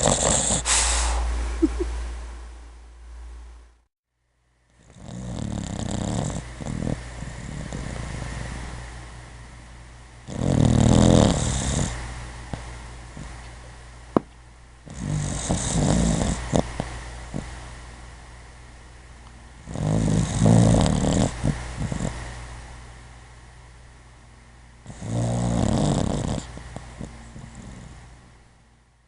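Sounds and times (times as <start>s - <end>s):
puppy breathing: 0.0s - 1.4s, 4.9s - 8.7s, 10.3s - 12.0s, 14.9s - 17.6s, 19.7s - 22.3s
puppy snoring: 0.0s - 1.8s, 4.8s - 8.8s, 10.2s - 13.4s, 14.8s - 17.6s, 19.6s - 22.3s, 24.8s - 28.1s.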